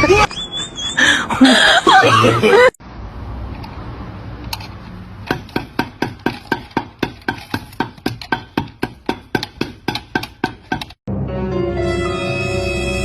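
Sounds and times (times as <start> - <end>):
sharp knocks: 5.2 - 11.0.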